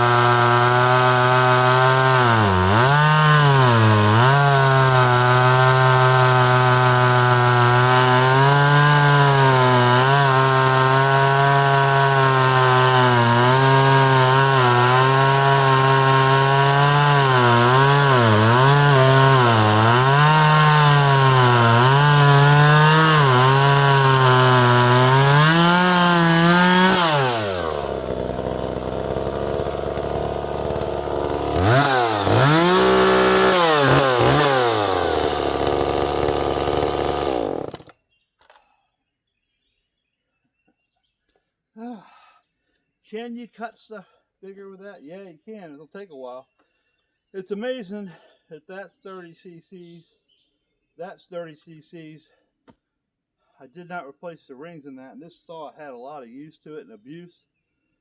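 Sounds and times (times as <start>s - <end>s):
chainsaw idling and revving: 0.0s - 38.6s
chainsaw cutting wood: 0.0s - 38.7s.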